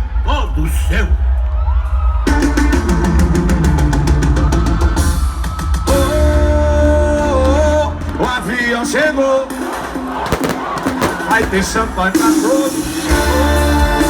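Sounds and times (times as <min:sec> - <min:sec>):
electronic music with heavy bass: 0:00.0 - 0:14.0
drum roll: 0:10.1 - 0:14.0.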